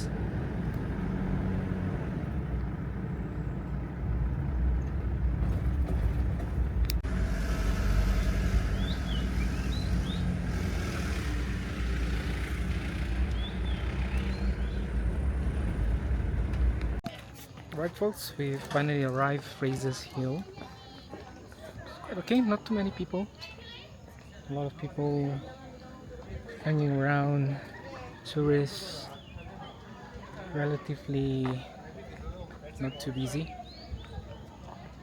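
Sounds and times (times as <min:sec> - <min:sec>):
diesel engine rumbling: 0:00.0 - 0:17.0
road noise: 0:00.0 - 0:21.0, 0:22.0 - 0:35.0.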